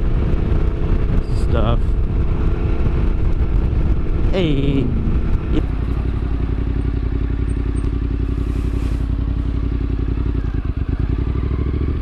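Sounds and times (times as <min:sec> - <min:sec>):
motorcycle engine running steadily: 0:00.0 - 0:12.0.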